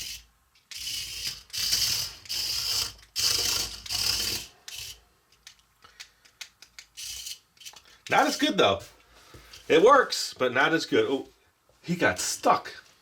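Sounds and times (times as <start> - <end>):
toy motor and gears whirring: 0.0 - 5.0, 6.6 - 8.5.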